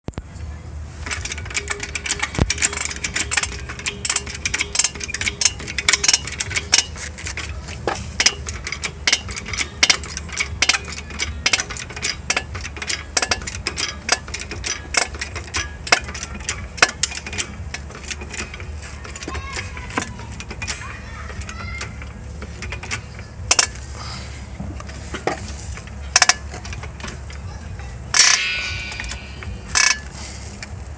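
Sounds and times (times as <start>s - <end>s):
sharp squeaks and clicks: 0.1s - 23.9s.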